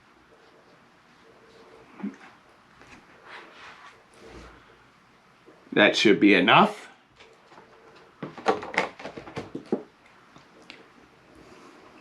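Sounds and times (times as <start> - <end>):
containers knocking and clicking: 8.2 - 9.9.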